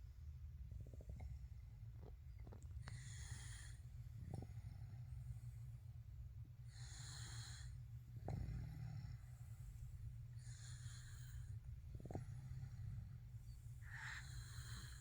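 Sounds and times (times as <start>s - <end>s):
steady low hum: 0.0s - 15.0s
baby snoring softly: 13.8s - 15.0s.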